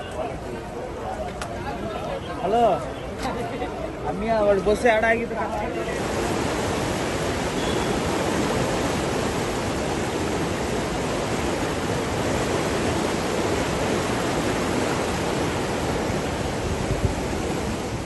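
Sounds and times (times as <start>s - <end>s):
floodwater rushing: 5.7s - 18.0s.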